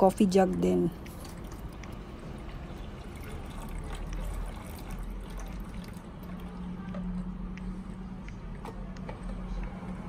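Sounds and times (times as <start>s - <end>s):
water pouring into a tank: 1.0s - 6.7s.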